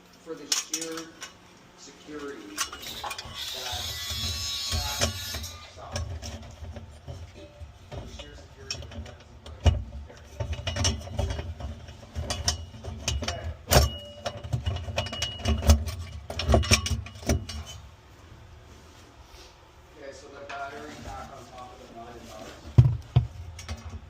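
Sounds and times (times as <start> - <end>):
tools knocking and clattering: 0.4 - 1.4, 2.2 - 17.9, 22.7 - 24.0.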